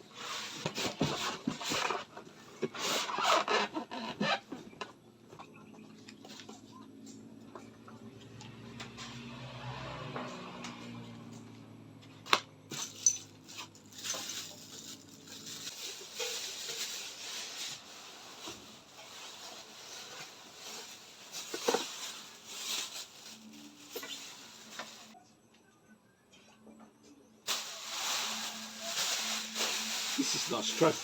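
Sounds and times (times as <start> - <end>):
packaging rustling and knocking: 12.8 - 25.2.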